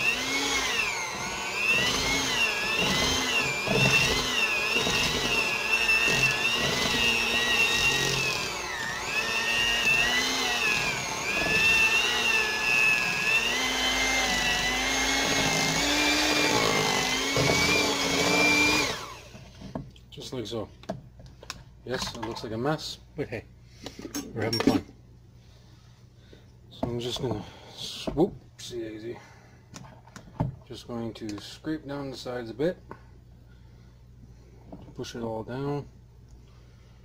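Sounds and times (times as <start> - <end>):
electric mixer motor whining: 0.0 - 19.4.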